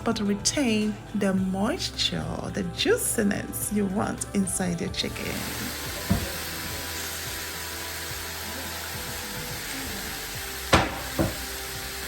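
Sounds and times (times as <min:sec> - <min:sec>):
background music: 0:00.0 - 0:12.0
chicken sizzling on grill pan: 0:05.2 - 0:12.0
sharp knocks: 0:10.7 - 0:11.4.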